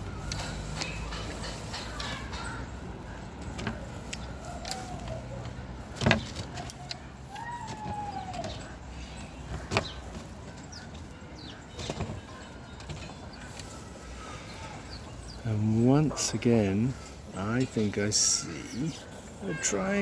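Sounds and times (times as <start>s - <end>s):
faint calls rising and falling: 6.8s - 10.2s.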